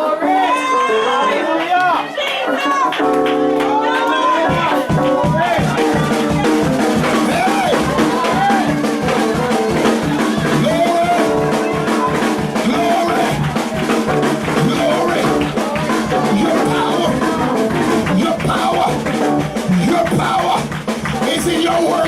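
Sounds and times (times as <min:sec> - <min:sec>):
held keyboard chords: 0:00.0 - 0:22.0
voices raised: 0:00.0 - 0:22.0
drum kit playing a driving beat: 0:02.9 - 0:22.0.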